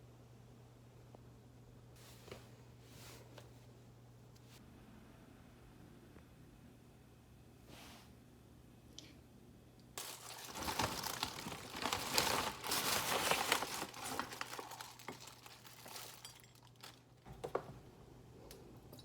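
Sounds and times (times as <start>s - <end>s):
packaging crinkling: 10.0s - 17.2s.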